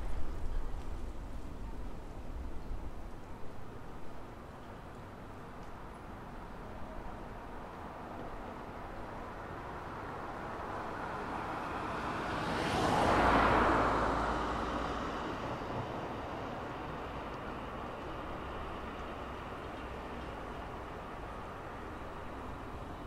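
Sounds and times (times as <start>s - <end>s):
distant traffic: 0.0s - 23.0s
vehicle passing on street: 9.0s - 23.0s.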